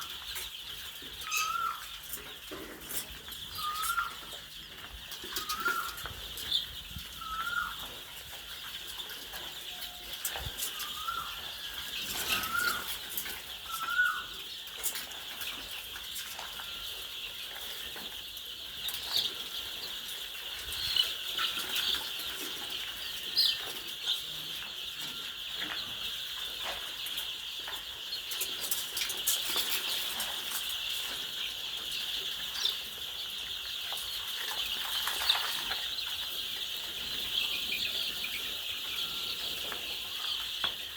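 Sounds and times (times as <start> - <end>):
chickens clucking and calling: 0.0 - 40.9.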